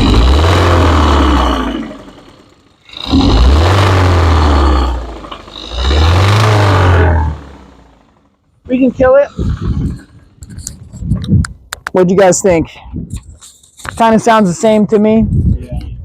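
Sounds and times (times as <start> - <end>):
car engine revving: 0.0 - 10.8
engine knocking: 0.0 - 10.8.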